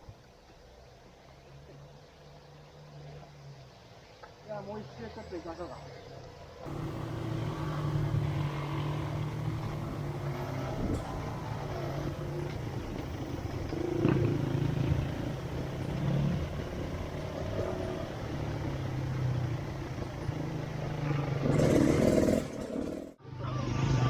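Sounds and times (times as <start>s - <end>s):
motorcycle engine running: 6.7s - 23.2s.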